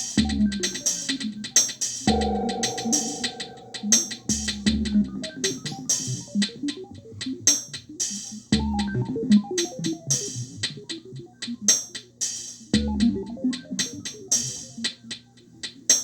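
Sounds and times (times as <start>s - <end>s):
drum machine beat: 0.0s - 15.0s
hi-hat ticks: 0.0s - 16.0s
short synth notes: 2.1s - 4.8s
deep kick drum: 2.1s - 5.1s.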